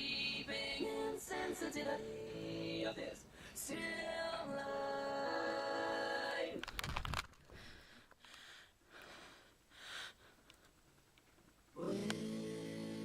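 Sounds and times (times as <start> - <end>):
faint breathy sounds: 3.2 - 3.7, 7.4 - 11.0.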